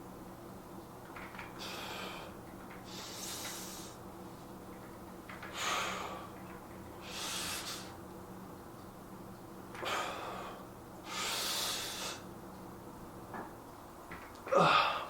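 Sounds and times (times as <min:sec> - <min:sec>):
man breathing hard: 0:01.6 - 0:04.0, 0:05.5 - 0:06.4, 0:07.0 - 0:08.0, 0:09.8 - 0:12.3.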